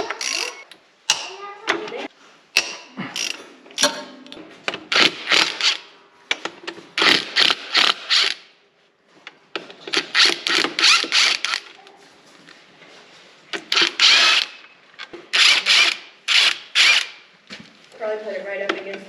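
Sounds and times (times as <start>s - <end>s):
socket ratchet clicking: 0.1s - 0.6s.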